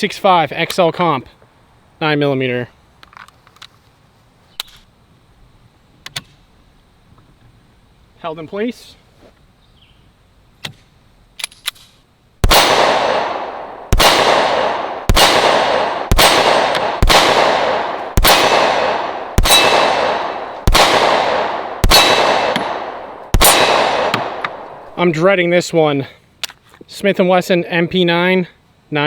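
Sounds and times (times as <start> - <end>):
pistol shots echoing: 12.4 - 25.0
steel target ringing: 12.5 - 24.4.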